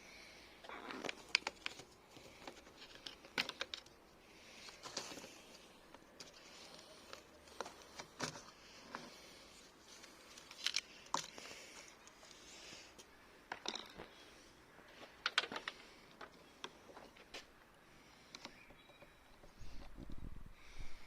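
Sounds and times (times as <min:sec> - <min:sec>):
plastic parts clicking: 0:00.7 - 0:04.0, 0:15.1 - 0:17.1.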